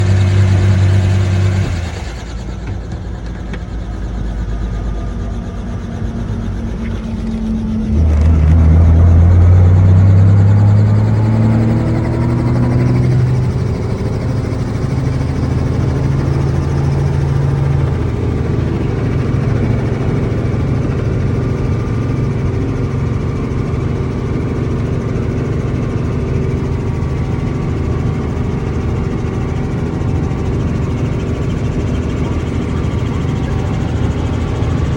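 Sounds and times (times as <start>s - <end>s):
helicopter engine and rotor: 0.0s - 34.9s.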